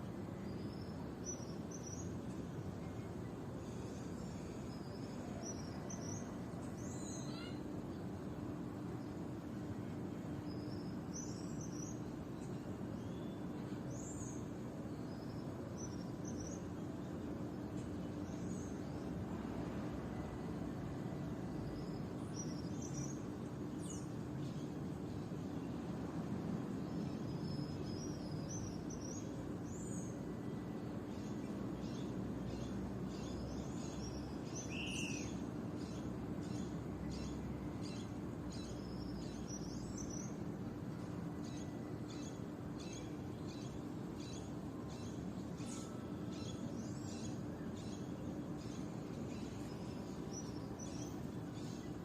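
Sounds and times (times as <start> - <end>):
small birds chirping: 0.1 - 52.0.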